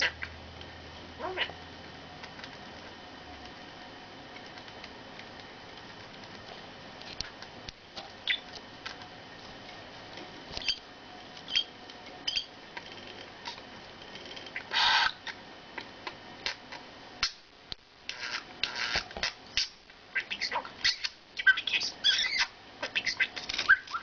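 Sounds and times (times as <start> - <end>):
bird harsh squawk: 1.2 - 1.5, 14.6 - 15.3, 19.6 - 24.0
bird high chirps: 12.3 - 12.5, 19.6 - 24.0
bird chatter: 14.6 - 15.4, 19.6 - 24.0.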